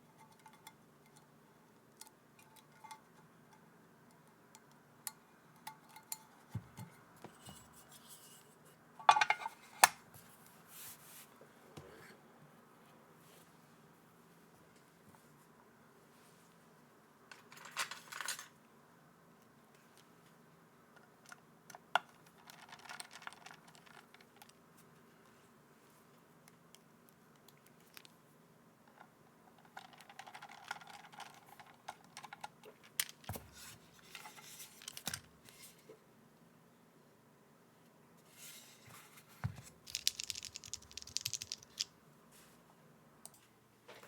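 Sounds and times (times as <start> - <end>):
plastic keyboard parts clicking: 39.9 - 41.9.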